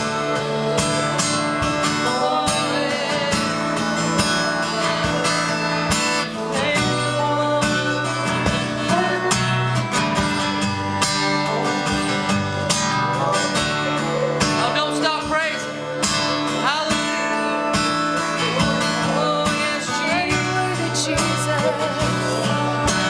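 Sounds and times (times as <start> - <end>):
strummed guitar: 0.0 - 23.0.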